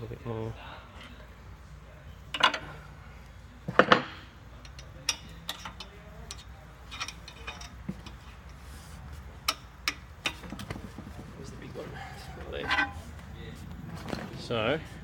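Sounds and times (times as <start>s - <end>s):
metal tools knocking on metal: 12.4s - 13.1s.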